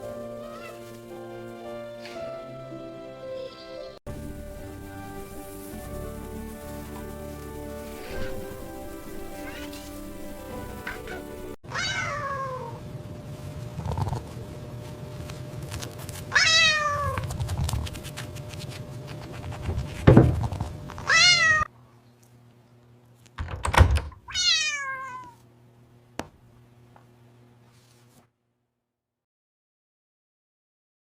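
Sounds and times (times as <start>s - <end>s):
cat meowing: 0.4s - 0.9s, 9.3s - 12.8s, 16.3s - 17.2s, 21.1s - 21.7s, 24.3s - 25.4s.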